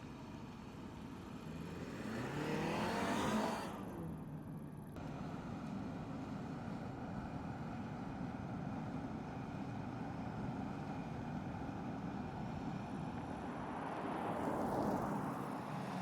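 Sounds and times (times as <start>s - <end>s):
car tyre and road noise: 11.2s - 16.0s.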